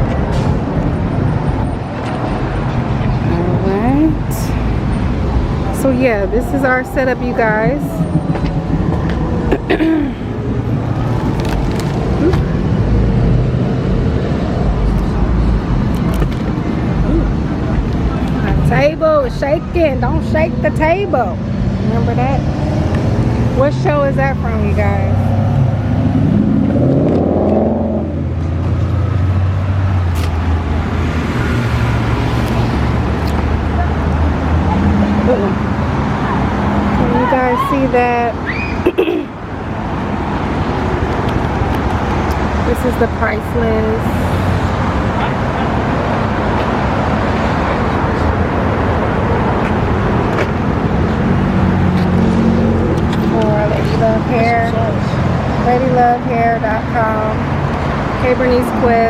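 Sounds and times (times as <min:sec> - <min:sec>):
road traffic rumble: 0:00.0 - 0:59.0
passing car engine: 0:19.8 - 0:59.0.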